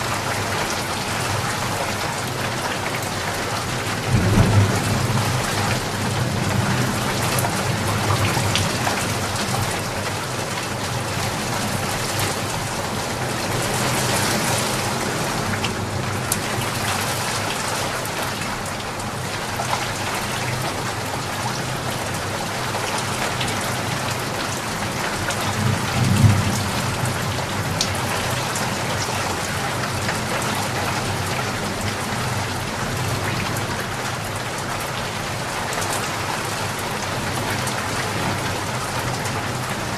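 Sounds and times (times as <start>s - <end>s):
steady rain falling: 0.0s - 39.9s
low thunder rumbles: 3.9s - 9.6s, 25.5s - 28.8s.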